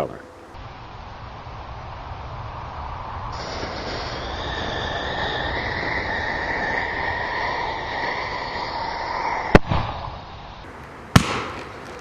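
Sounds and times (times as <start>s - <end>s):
firework bangs with echo: 9.5s - 12.0s.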